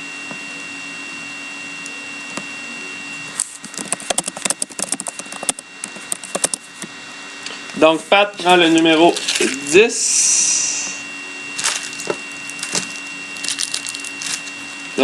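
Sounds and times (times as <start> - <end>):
electrical hum: 0.0 - 15.0
rapid sharp clicks: 3.7 - 6.6.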